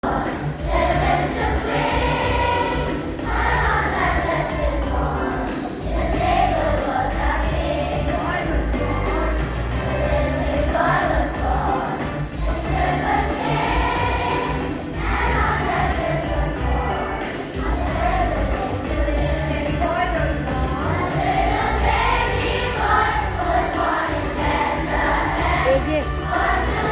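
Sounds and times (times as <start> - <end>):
choir singing: 0.0 - 26.9
jingling percussion: 0.1 - 26.9
bass line: 6.0 - 11.8, 17.6 - 26.9.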